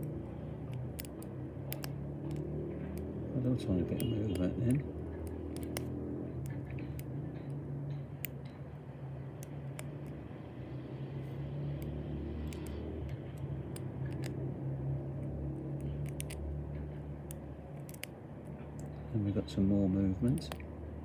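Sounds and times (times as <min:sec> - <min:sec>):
faint clicks of lock picking: 0:00.0 - 0:03.1, 0:03.7 - 0:08.6, 0:11.8 - 0:14.4, 0:15.2 - 0:19.1, 0:20.2 - 0:20.7
low background hum: 0:00.0 - 0:21.0.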